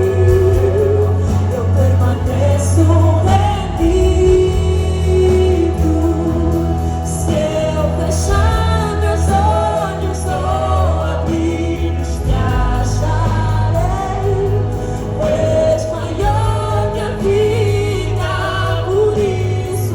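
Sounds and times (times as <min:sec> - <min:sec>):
band with steady bass line: 0:00.0 - 0:19.9
voices singing gospel song: 0:00.0 - 0:19.9.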